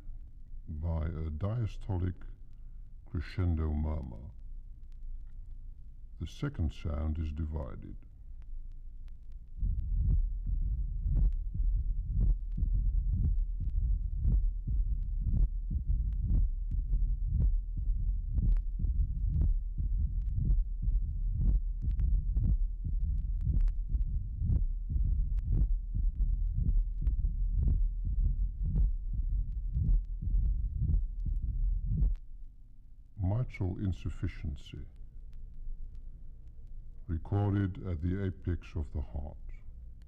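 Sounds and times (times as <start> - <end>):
heartbeat with murmur: 6.2 - 32.3.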